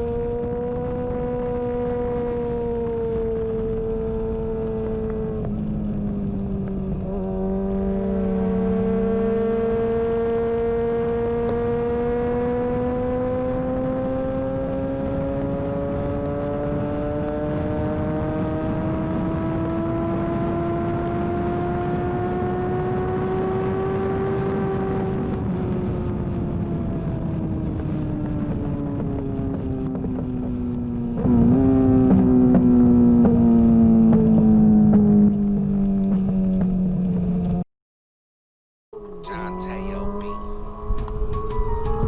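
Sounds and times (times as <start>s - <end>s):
motorcycle engine at high revs: 6.7s - 25.0s.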